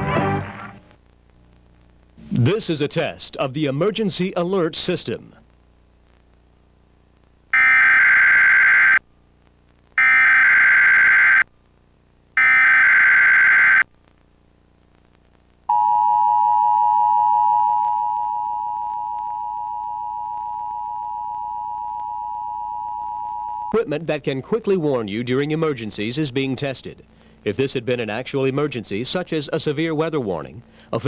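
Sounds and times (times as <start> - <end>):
two-tone attention signal: 15.7 - 23.8.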